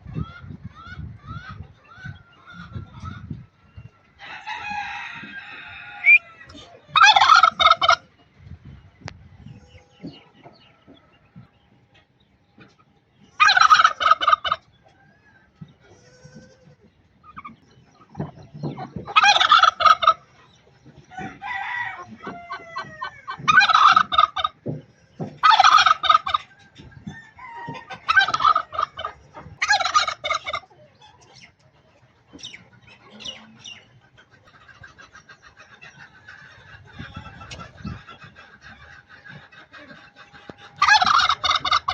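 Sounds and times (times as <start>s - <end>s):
turkey clucking: 0.0s - 8.9s, 9.5s - 15.9s, 16.9s - 41.9s
turkey gobbling: 0.1s - 3.3s, 4.8s - 8.3s, 12.7s - 15.3s, 17.2s - 20.6s, 21.2s - 24.6s, 25.4s - 41.9s.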